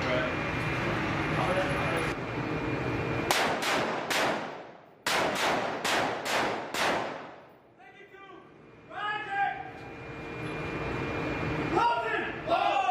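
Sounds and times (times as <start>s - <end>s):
gunshots with ringing tail: 3.3s - 7.5s.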